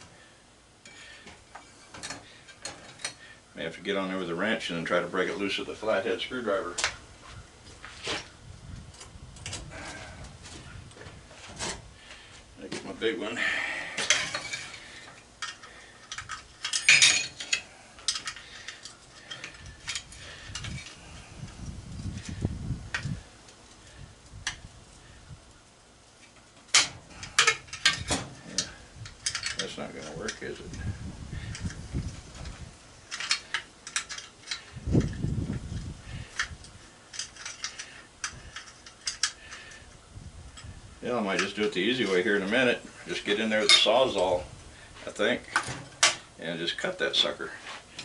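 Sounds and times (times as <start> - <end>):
metal tools clinking and scraping: 0.8 - 3.4, 12.8 - 21.2, 26.2 - 44.4, 45.0 - 48.0.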